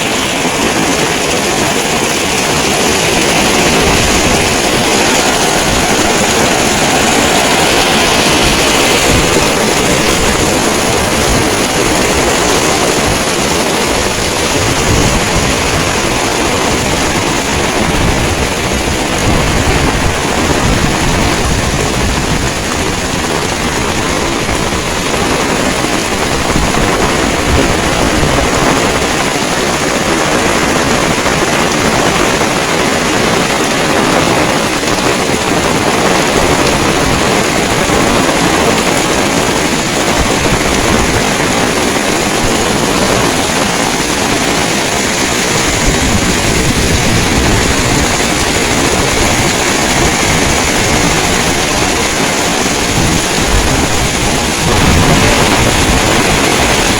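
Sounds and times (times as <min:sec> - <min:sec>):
heavy rain pouring: 0:00.0 - 0:56.9
wind buffeting microphone: 0:00.0 - 0:56.9.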